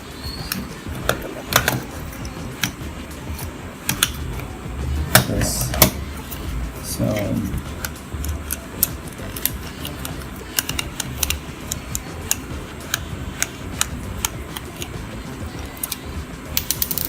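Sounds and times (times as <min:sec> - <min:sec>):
hard plastic clicks and taps: 0:00.5 - 0:04.5, 0:07.6 - 0:15.0.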